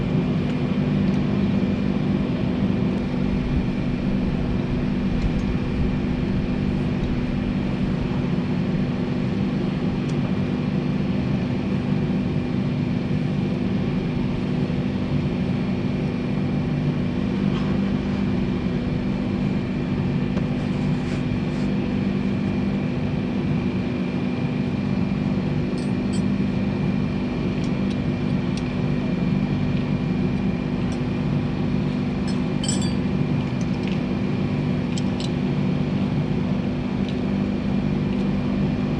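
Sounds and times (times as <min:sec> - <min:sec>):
light clinks: 0:32.3 - 0:33.1.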